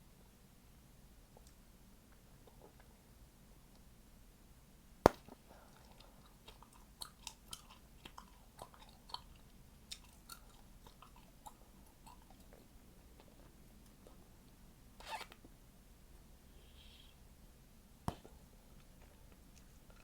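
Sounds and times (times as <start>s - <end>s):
gum popping and snapping: 5.1s - 9.3s
chewing gum being chewed: 5.7s - 14.2s.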